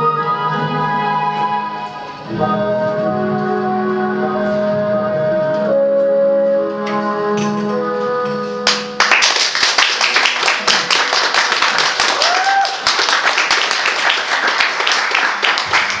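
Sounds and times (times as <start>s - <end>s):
audience applause: 8.7s - 16.0s.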